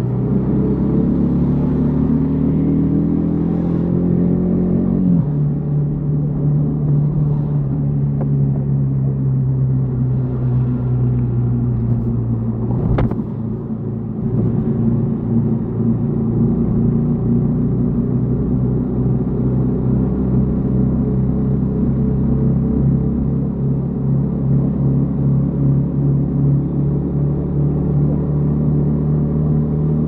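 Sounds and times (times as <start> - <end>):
wind rumble on microphone: 4.8 - 19.2.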